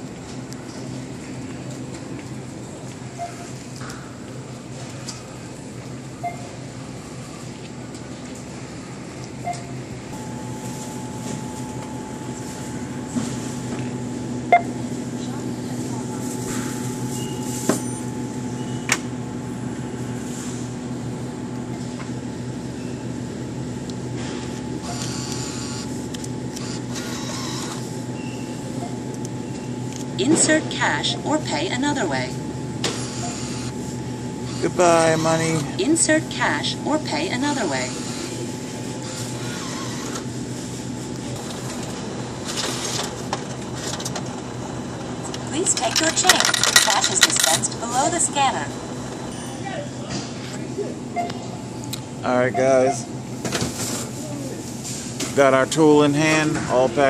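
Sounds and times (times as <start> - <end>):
electrical and ventilation hum: 0.0 - 57.0
cash mechanism whirring: 24.2 - 49.4.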